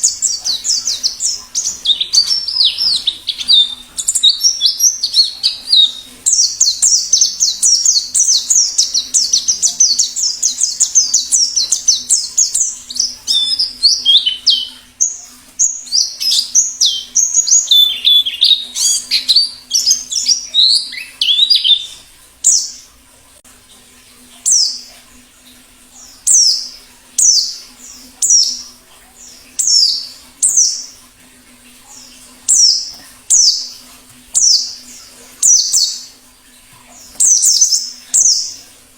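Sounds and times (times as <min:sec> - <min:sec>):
bird twittering warble: 0:00.0 - 0:22.9, 0:26.0 - 0:31.0, 0:31.9 - 0:36.2, 0:37.0 - 0:38.7.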